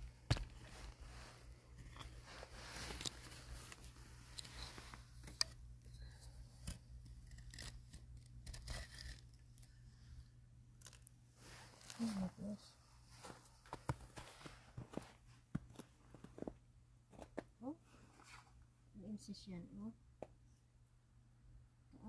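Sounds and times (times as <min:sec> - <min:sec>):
snow crunching and scraping: 0:02.2 - 0:05.0, 0:11.4 - 0:15.4.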